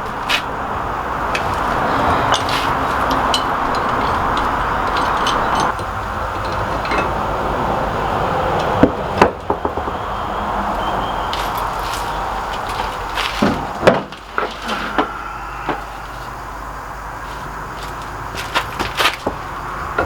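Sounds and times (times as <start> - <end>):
steady rushing background noise: 0.0 - 20.0
tools clicking and knocking: 1.3 - 7.3.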